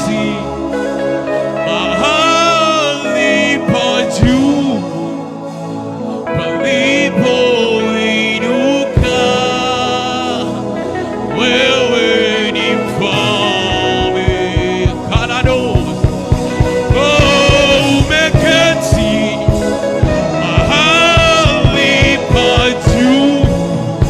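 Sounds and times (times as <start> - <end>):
gospel singing: 0.0 - 24.0
steady low beat: 3.6 - 6.6, 9.0 - 24.0.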